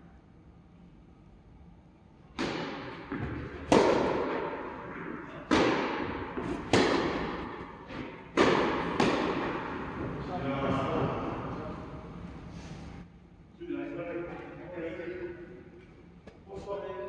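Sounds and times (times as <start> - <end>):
tennis ball bounces: 2.3 - 11.3
rackets striking tennis ball: 2.3 - 12.3.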